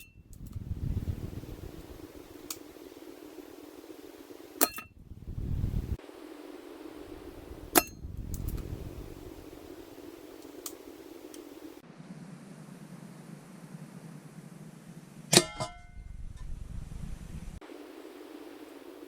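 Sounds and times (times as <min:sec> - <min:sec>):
short low rumble: 0:15.8 - 0:17.6.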